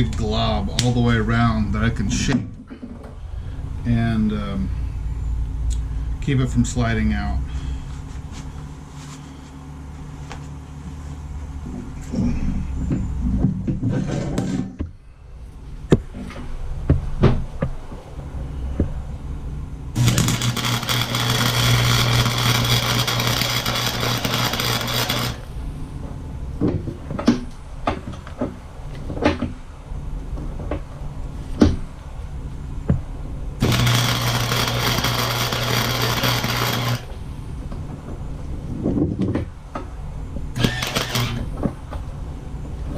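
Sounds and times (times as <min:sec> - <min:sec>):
low hum: 0:00.0 - 0:27.9, 0:29.8 - 0:39.2
arc welding crackle and sizzle: 0:19.9 - 0:25.7, 0:33.6 - 0:37.3, 0:40.6 - 0:41.8.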